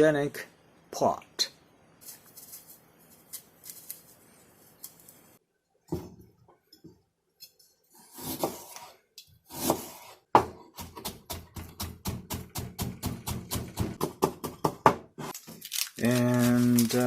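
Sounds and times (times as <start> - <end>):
knife chopping on cutting board: 8.2 - 8.7, 9.5 - 15.0.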